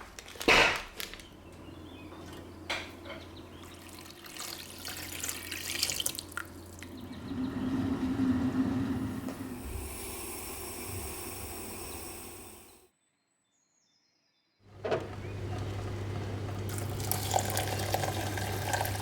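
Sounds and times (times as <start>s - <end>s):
tap water running into sink: 2.1s - 7.1s, 14.8s - 19.0s.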